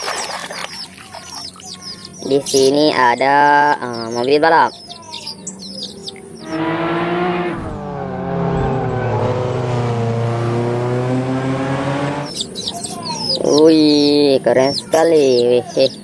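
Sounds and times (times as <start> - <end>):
race car engine drone: 4.8 - 14.6.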